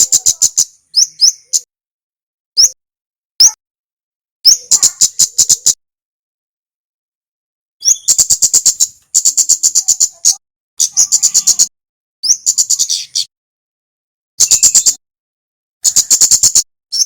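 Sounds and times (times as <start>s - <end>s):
bird chipping notes: 0.0s - 1.7s, 2.6s - 2.8s, 7.8s - 13.3s, 14.4s - 15.0s.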